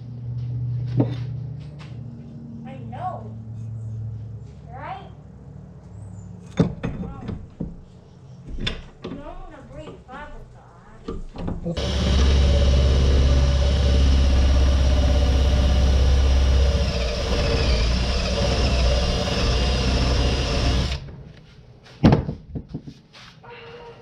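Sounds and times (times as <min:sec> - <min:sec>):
electric drill boring: 0:11.8 - 0:21.2.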